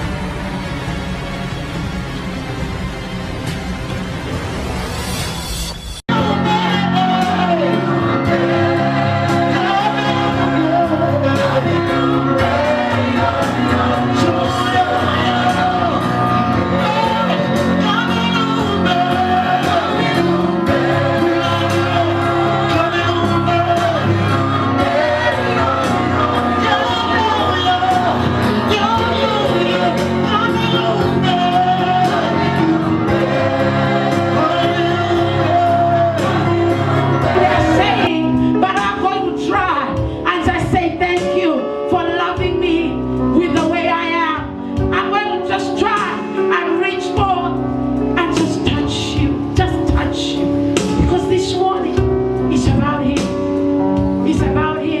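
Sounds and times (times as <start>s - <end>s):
worship band with singing: 6.1s - 55.0s.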